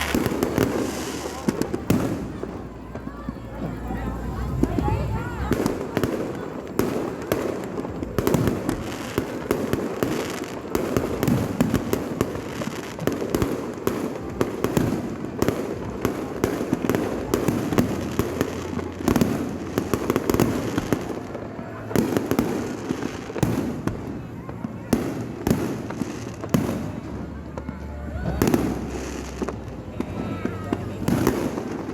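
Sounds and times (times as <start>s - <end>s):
fireworks bangs and crackles: 0.0s - 31.9s.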